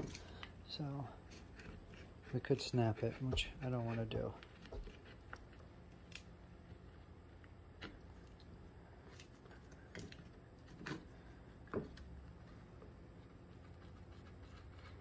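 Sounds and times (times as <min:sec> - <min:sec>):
carving tool cutting bark: 0:00.0 - 0:06.4.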